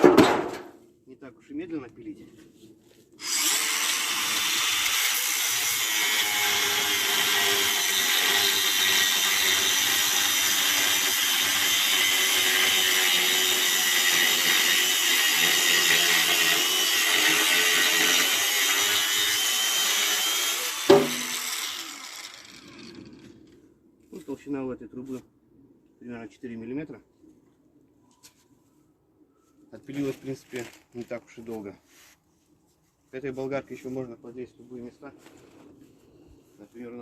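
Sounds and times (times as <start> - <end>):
angle grinder cutting steel pipe: 3.2 - 23.4
sharp knock: 20.9 - 21.3.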